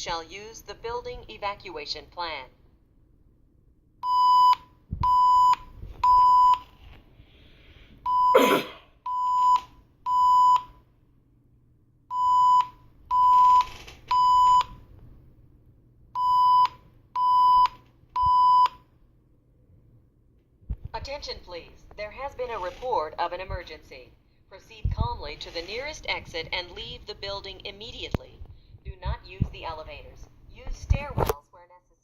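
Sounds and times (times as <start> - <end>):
fire alarm electronic beeps: 4.0 - 6.7, 8.1 - 8.3, 9.1 - 10.8, 12.1 - 14.8, 16.2 - 18.8.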